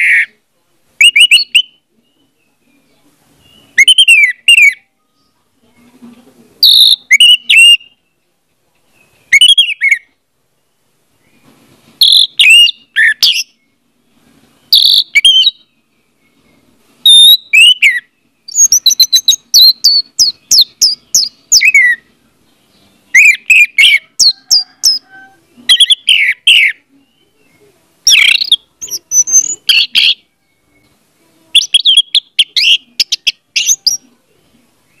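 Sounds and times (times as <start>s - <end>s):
thrush singing whistled phrases: 1.0s - 2.6s, 3.4s - 5.3s, 6.6s - 8.2s, 9.3s - 10.2s, 12.0s - 13.7s, 14.6s - 15.8s, 17.0s - 22.1s, 23.1s - 27.4s, 28.0s - 30.8s, 31.5s - 34.1s.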